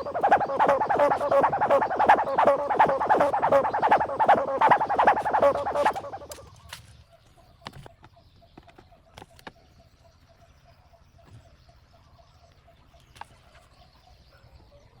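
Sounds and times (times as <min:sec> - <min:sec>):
faint bird calling: 0:00.0 - 0:06.5.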